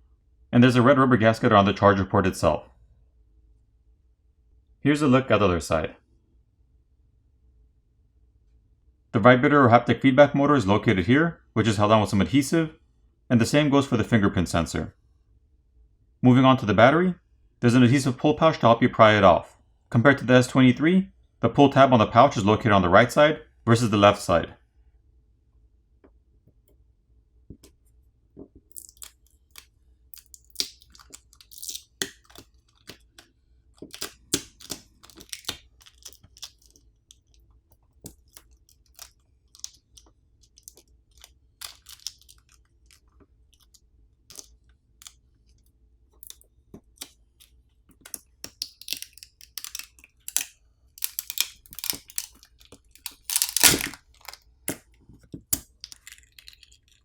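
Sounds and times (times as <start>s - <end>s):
adhesive crackling and tearing: 28.7s - 45.2s, 46.2s - 57.0s.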